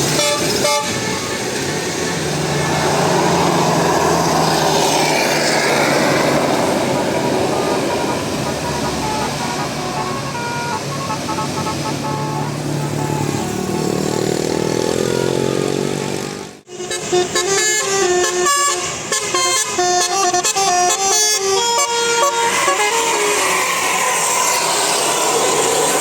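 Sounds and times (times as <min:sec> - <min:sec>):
multi-tone bus horns: 0:00.0 - 0:01.7, 0:06.2 - 0:24.6
bus engine: 0:00.0 - 0:26.0.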